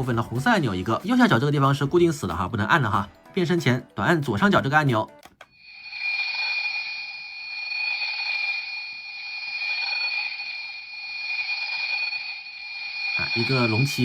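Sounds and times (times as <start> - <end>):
high ringing tone from toy speaker: 5.5 - 14.0.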